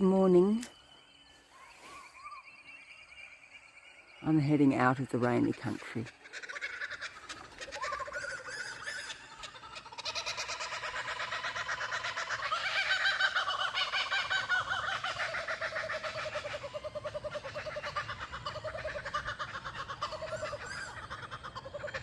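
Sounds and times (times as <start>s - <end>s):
small birds chirping: 0.0s - 22.0s
kookaburras laughing: 5.4s - 22.0s.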